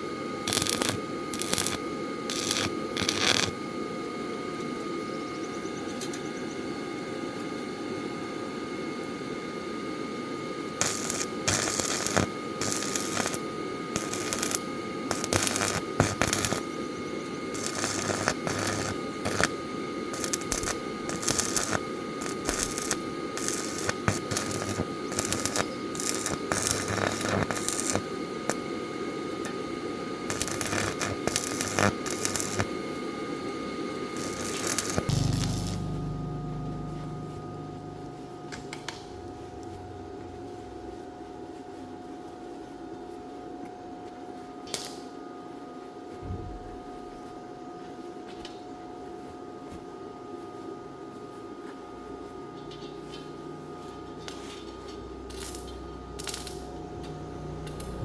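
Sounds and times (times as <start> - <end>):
background hum: 0.0 - 3.6, 10.7 - 41.6
faint steady whine: 0.0 - 41.7.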